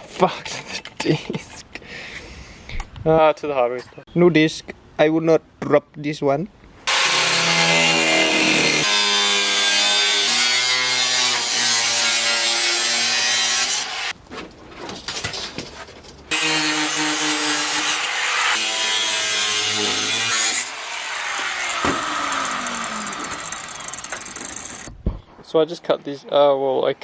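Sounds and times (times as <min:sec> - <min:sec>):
angle grinder cutting sheet metal: 0:06.9 - 0:14.2, 0:16.3 - 0:24.9.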